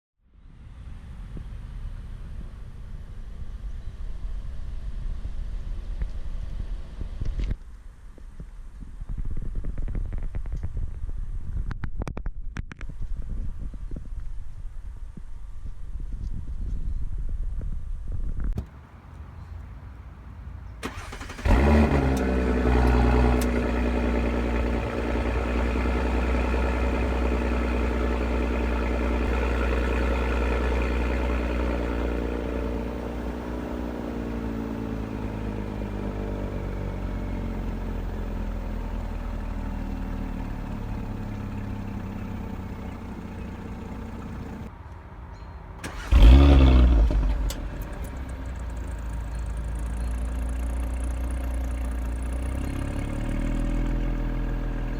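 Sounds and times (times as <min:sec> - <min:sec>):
car engine starting and idling: 0:20.7 - 0:44.7, 0:45.8 - 0:54.9
engine revving flare: 0:20.8 - 0:32.1, 0:45.8 - 0:49.4.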